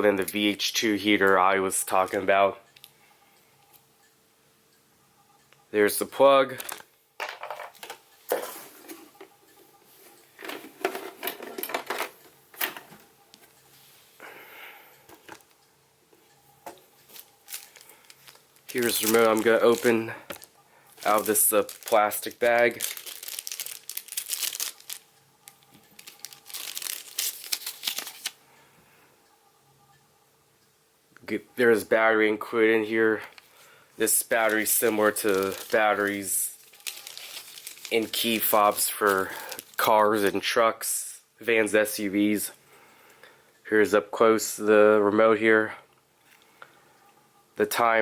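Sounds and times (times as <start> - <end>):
plastic bag crinkling: 17.1 - 28.4, 33.3 - 40.4.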